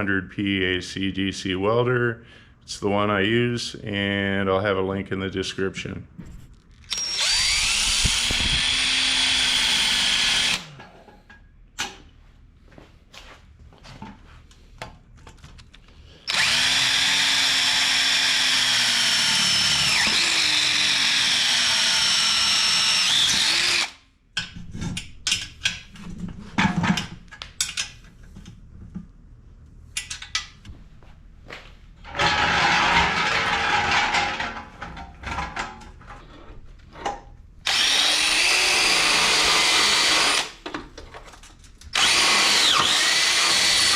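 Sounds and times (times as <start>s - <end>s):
power drill drilling into metal: 6.9s - 10.7s, 16.3s - 24.0s, 37.7s - 40.6s, 41.9s - 43.9s.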